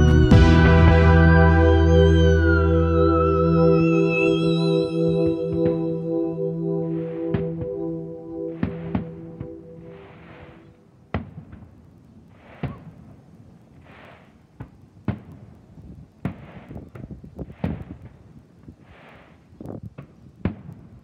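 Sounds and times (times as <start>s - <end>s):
held musical chord: 0.0s - 10.8s
fireworks bangs: 8.5s - 13.2s, 13.8s - 15.5s, 16.2s - 18.2s
fireworks hissing and crackling: 10.0s - 21.0s.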